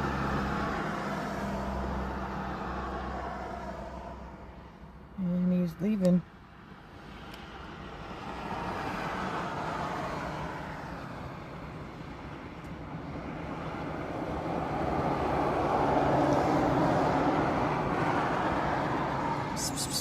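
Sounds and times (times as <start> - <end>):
passing motor traffic: 0.0 - 20.0.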